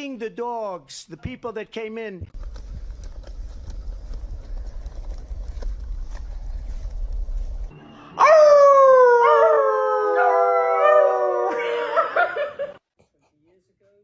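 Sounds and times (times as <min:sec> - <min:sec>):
low rumble: 0:02.4 - 0:08.2
dog howling: 0:08.2 - 0:12.3.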